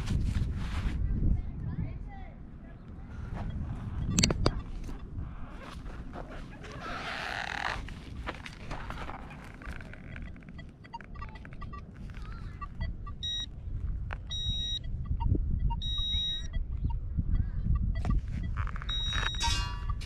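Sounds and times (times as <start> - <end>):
metal detector beeps: 3.4 - 5.5, 9.3 - 13.5, 14.2 - 20.0
high-pitched detector tones: 3.4 - 5.8, 9.4 - 20.0.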